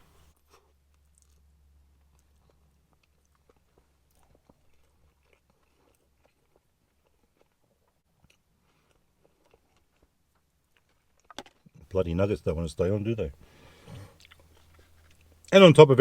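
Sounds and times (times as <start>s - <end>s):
low steady hum: 0.0s - 16.0s
chewing with wet mouth clicks: 0.4s - 11.6s, 14.1s - 15.5s.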